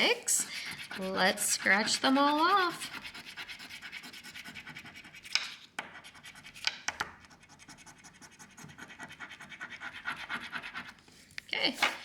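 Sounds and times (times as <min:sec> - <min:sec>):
lottery ticket being scratched: 0:00.0 - 0:04.4.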